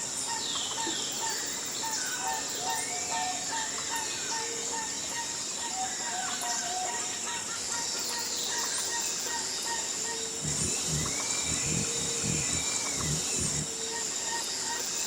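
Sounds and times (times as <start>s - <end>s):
insect drone: 0.0s - 15.0s
low repeated pulses: 10.4s - 13.8s.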